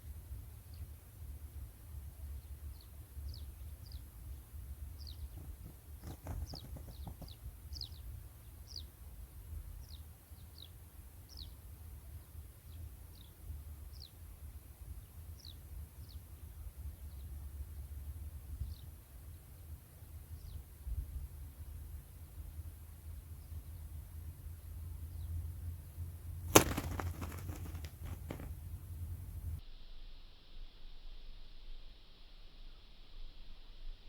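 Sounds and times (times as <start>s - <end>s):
small bird chirping: 4.9s - 8.9s, 26.5s - 29.6s.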